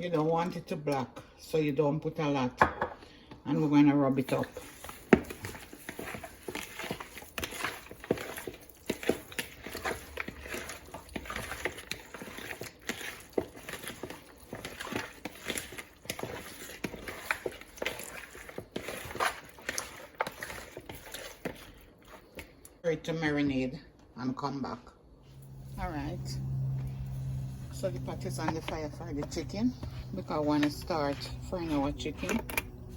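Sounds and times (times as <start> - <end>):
hands squelching raw chicken: 4.4 - 22.8.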